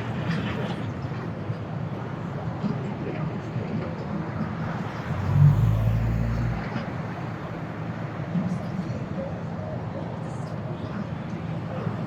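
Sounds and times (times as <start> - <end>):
outdoor traffic and city noise: 0.0 - 12.0
low engine rumble: 4.6 - 7.5.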